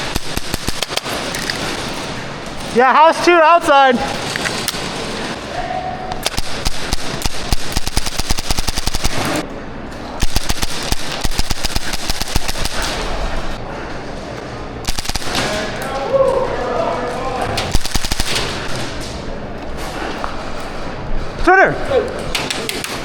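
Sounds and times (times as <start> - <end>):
airsoft guns firing: 0.0 - 2.2, 6.2 - 9.4, 10.2 - 13.6, 14.8 - 15.8, 17.6 - 19.1.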